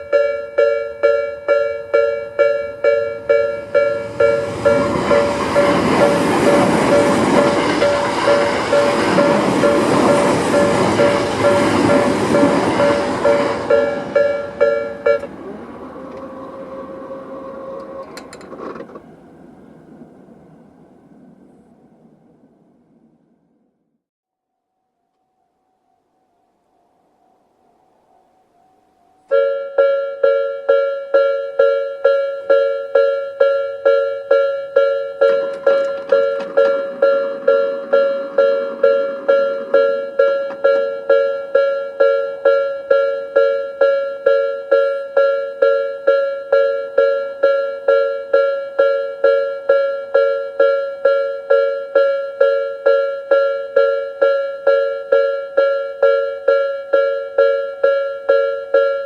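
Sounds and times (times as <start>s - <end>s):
level crossing bell ringing: 0.0s - 18.2s, 29.2s - 59.0s
rushing noise: 2.1s - 23.7s, 35.2s - 41.3s.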